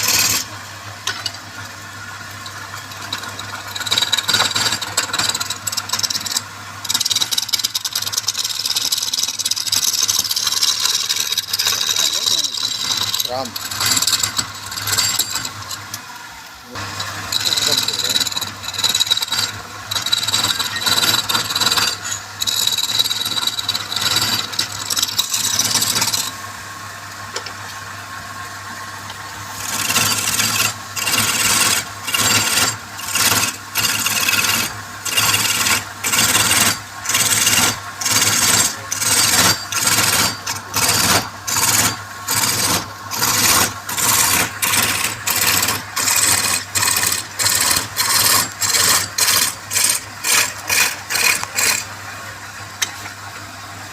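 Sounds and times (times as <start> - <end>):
wood lathe humming: 0.0 - 1.2, 2.7 - 26.4, 29.4 - 51.9
hand tool scraping spinning wood: 0.0 - 26.4, 29.4 - 52.3.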